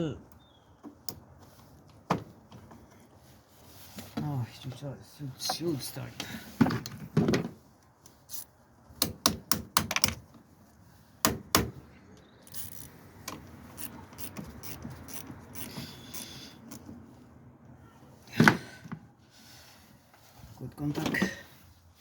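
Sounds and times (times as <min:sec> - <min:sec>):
metallic clicks of hand tools: 0:12.4 - 0:16.8.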